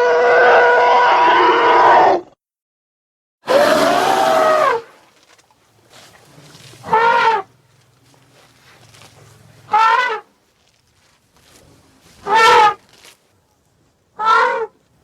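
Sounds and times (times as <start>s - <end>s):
elephant trumpeting: 3.4s - 5.0s, 6.8s - 7.6s, 9.7s - 10.3s, 12.2s - 12.8s, 14.2s - 14.7s.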